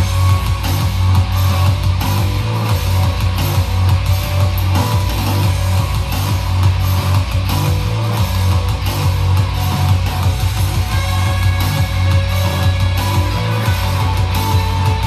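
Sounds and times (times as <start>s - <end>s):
rock music with guitar and bass: 0.0s - 15.0s.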